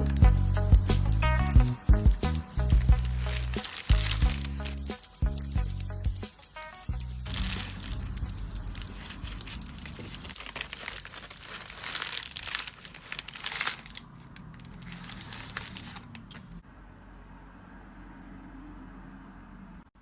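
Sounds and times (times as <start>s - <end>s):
packaging crinkling and rustling: 2.6s - 6.2s, 6.8s - 16.6s.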